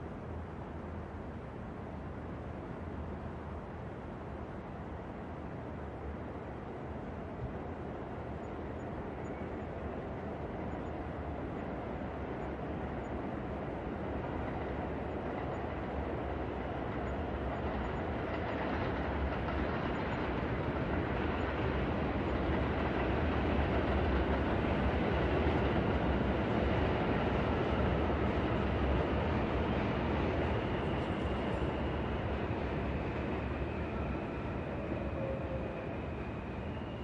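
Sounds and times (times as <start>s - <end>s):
low city rumble: 0.0s - 37.0s.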